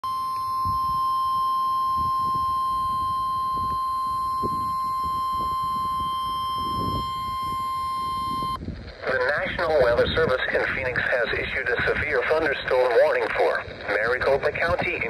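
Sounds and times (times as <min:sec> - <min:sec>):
steady alarm tone over radio: 0:00.0 - 0:08.6.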